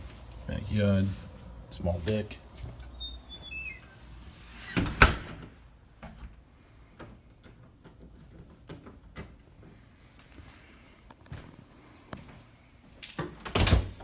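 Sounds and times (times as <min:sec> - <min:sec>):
door squeaks: 0:02.8 - 0:05.3.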